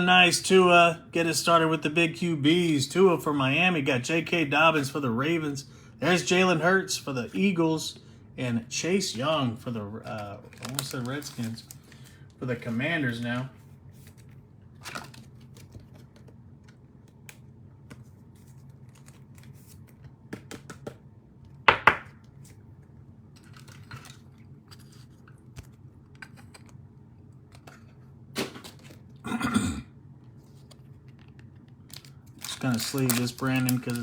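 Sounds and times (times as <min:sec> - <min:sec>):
low steady hum: 0:00.0 - 0:34.0
trading cards clicking and rustling: 0:10.0 - 0:21.0, 0:23.3 - 0:29.1, 0:30.5 - 0:34.0.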